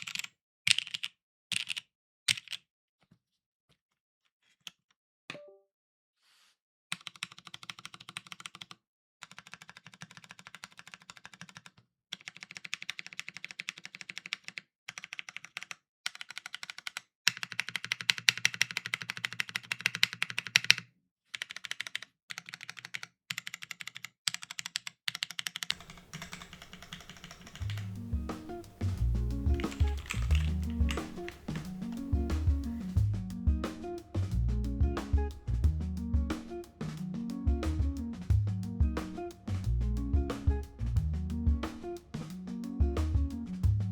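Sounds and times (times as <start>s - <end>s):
mechanical keyboard typing: 9.3s - 20.6s, 21.4s - 33.0s
music: 25.8s - 43.9s.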